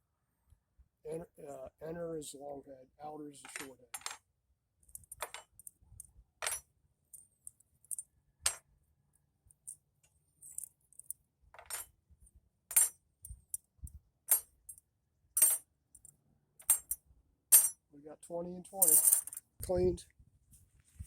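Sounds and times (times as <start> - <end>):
metal spokes clinking: 18.8 - 19.4.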